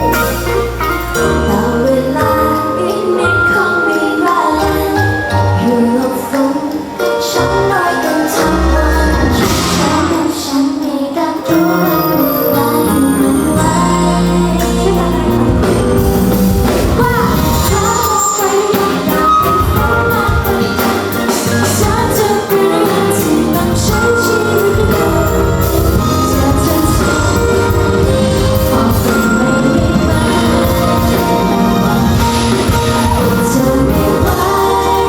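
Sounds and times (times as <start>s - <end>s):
female group singing pop song: 17.0s - 35.0s.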